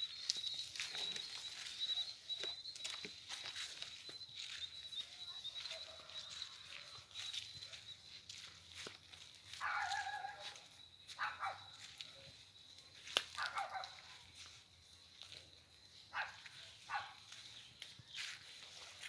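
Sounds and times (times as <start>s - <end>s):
crickets chirring: 0.0s - 19.0s
animal calling: 9.5s - 12.3s.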